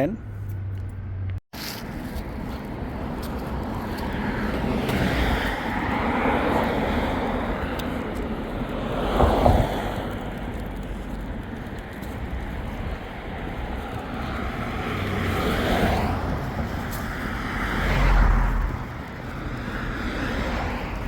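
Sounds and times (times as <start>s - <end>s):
road traffic rushing: 0.0s - 21.0s.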